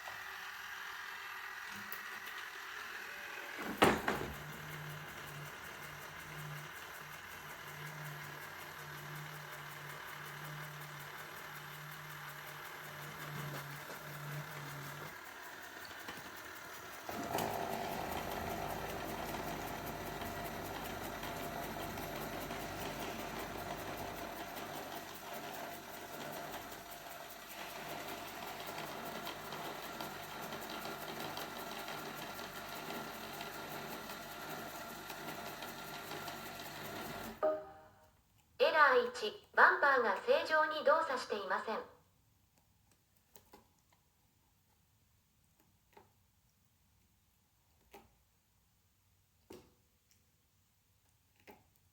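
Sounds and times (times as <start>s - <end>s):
vacuum motor whir with whine: 0.0s - 37.4s
robot vacuum humming: 0.0s - 37.6s.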